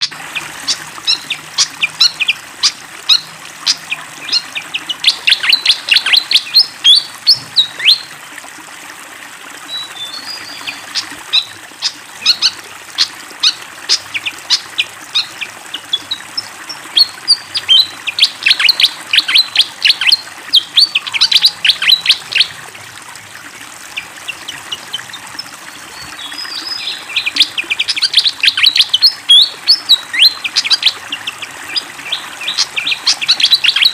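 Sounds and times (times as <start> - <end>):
bird chirping song: 0.0 - 8.1, 9.7 - 22.6, 24.0 - 33.9
flowing water: 0.0 - 33.9.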